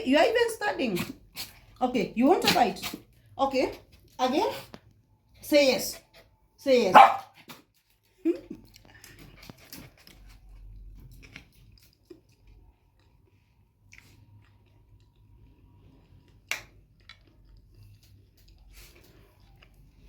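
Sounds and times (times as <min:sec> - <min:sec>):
close chewing: 0:07.3 - 0:20.0.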